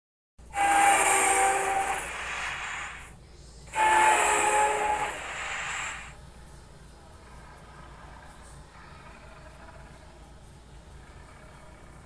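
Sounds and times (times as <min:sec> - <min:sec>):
train horn blasts: 0:00.5 - 0:03.0, 0:03.7 - 0:06.1
hissy rush: 0:01.0 - 0:03.1, 0:03.8 - 0:06.1.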